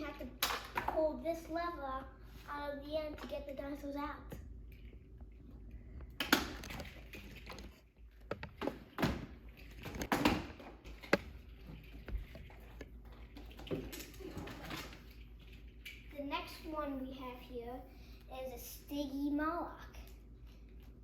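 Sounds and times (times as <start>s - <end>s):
plastic toys clicking and knocking: 0.2s - 1.1s, 6.0s - 16.1s.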